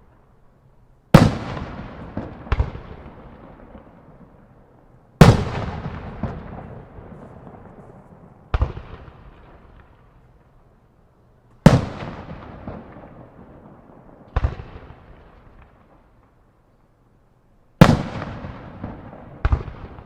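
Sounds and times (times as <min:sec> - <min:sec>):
rolling echo: 0:00.0 - 0:16.9, 0:17.8 - 0:20.0
firework shells booming: 0:05.2 - 0:10.0.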